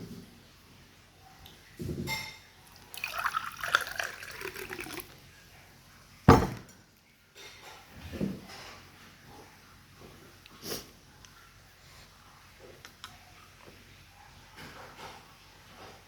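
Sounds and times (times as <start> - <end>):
glass or dish contact: 1.8 - 2.5
wet liquid crackling: 2.7 - 5.2
sharp knock: 6.3 - 6.6.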